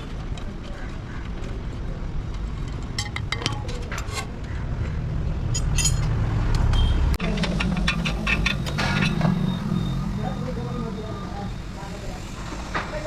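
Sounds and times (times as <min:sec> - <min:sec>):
metal tools clinking: 0:05.5 - 0:06.2.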